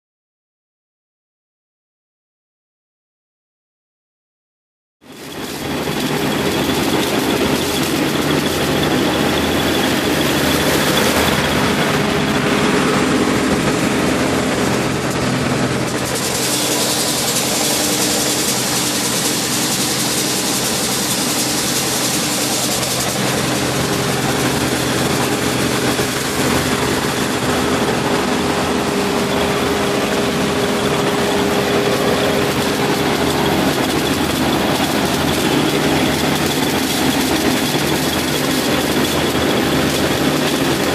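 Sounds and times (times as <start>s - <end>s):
high machinery whine: 5.0s - 40.9s
diesel engine hum: 5.1s - 40.9s
bright rushing hiss: 16.0s - 28.4s.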